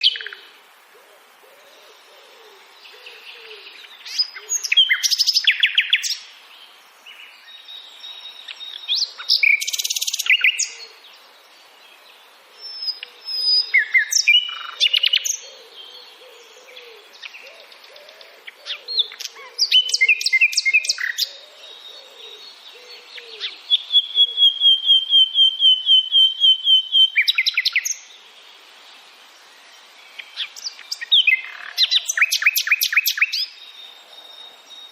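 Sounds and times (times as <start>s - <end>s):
faint low bird calls: 0.0s - 6.1s, 12.0s - 28.0s
songbird singing: 0.0s - 34.9s.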